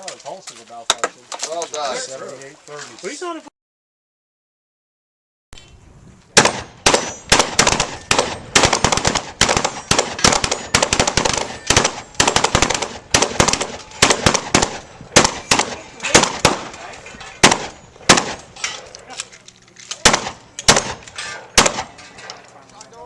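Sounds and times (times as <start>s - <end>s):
shotgun fire: 6.4s - 18.5s, 20.0s - 22.0s.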